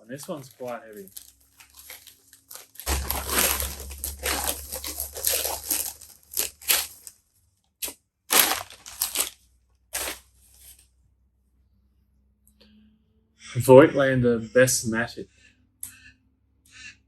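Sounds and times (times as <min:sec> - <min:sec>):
packaging crinkling and tearing: 0:00.2 - 0:07.2, 0:07.8 - 0:10.8.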